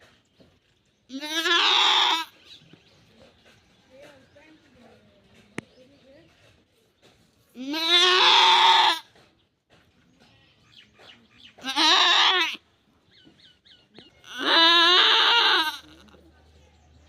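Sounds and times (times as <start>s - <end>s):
goat bleating: 1.1s - 2.4s, 7.5s - 9.1s, 11.6s - 12.6s, 14.2s - 16.2s.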